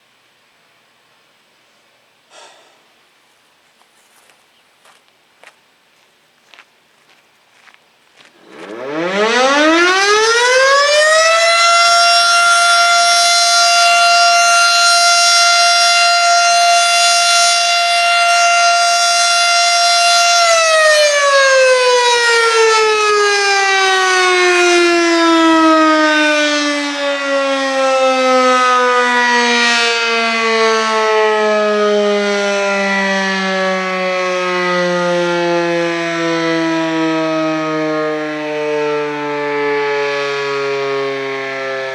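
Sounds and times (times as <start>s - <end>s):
warning siren winding: 8.4s - 31.7s.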